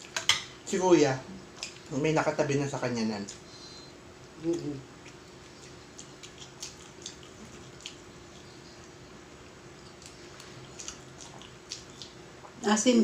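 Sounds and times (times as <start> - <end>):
wet mouth clicks and smacks: 5.0 - 9.0, 9.8 - 12.2.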